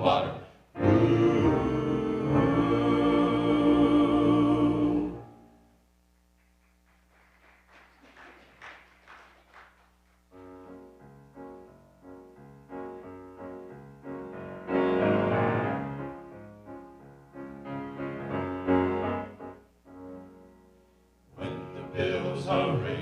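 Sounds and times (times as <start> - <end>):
piano chords: 0.8 - 5.9, 10.3 - 23.0.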